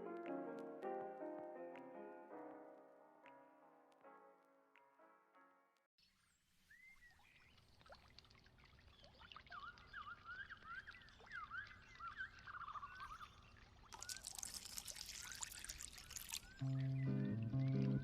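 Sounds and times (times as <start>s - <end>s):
faint high chirping calls: 8.7s - 14.6s.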